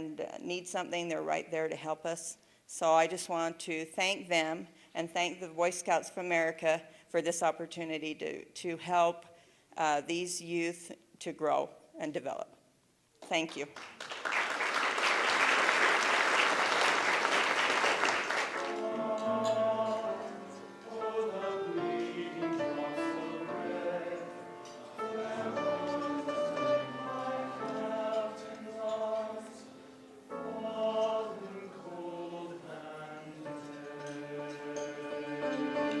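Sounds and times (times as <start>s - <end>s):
applause: 13.4s - 18.8s
music with long held notes: 18.5s - 36.0s.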